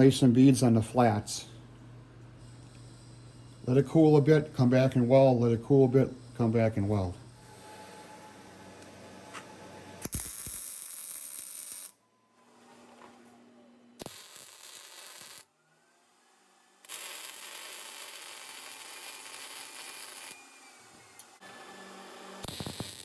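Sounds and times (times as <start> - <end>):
arc welder hissing: 10.0 - 11.9, 14.0 - 15.5, 16.8 - 23.0.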